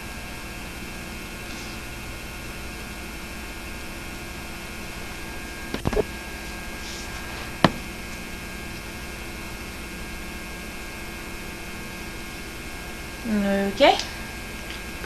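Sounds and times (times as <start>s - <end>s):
electrical hum and hiss: 0.0s - 15.0s
person narrating: 13.3s - 14.1s.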